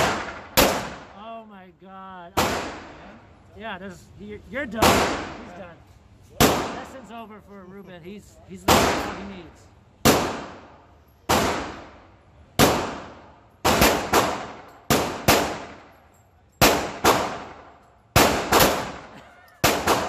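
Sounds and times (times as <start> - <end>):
pistol shots echoing: 0.0 - 1.2, 2.4 - 3.0, 4.7 - 5.6, 6.4 - 7.0, 8.7 - 9.3, 10.0 - 15.9, 16.6 - 20.0.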